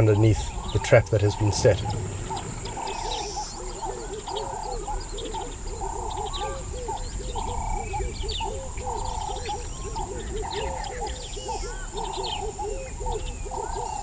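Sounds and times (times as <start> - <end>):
quick low animal calls: 0.0 - 4.4.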